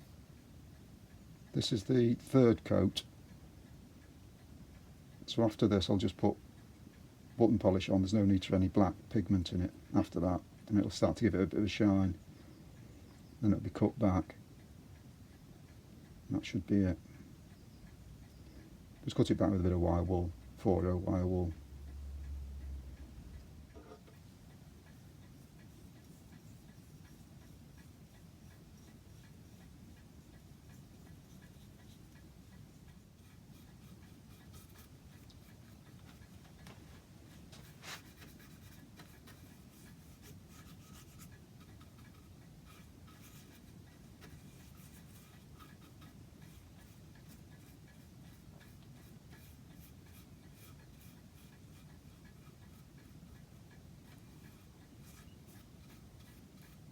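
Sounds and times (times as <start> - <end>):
faint clock ticking: 0.0 - 56.9
wire wool rubbing on wood: 23.7 - 56.9.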